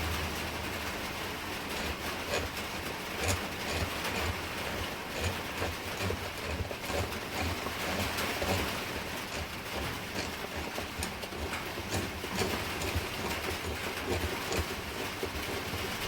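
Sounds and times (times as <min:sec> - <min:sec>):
heavy rain on a roof: 0:00.0 - 0:05.8.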